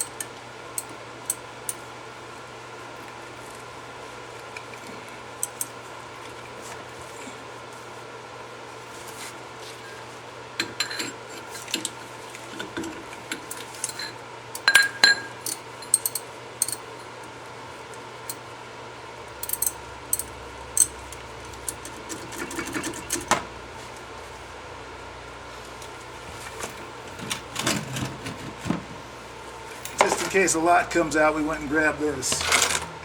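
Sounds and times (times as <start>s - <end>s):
faint steady hum: 0.0s - 33.0s
metal tools and brake parts clanking: 12.7s - 16.8s, 19.4s - 21.0s, 29.7s - 30.5s.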